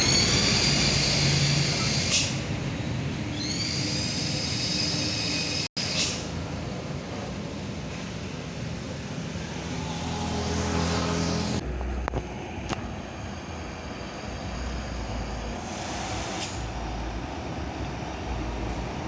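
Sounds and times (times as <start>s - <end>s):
steady traffic noise: 0.0s - 19.0s
heavy vehicle engine passing: 8.3s - 12.5s.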